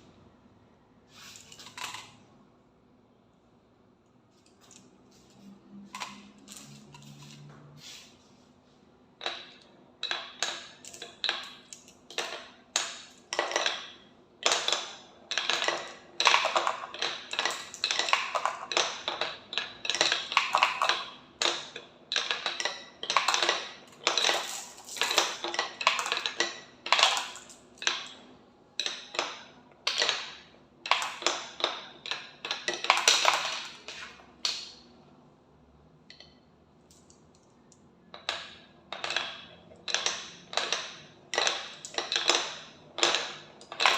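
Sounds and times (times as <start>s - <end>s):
marbles rattling down a track: 10.0s - 28.0s, 32.4s - 34.0s.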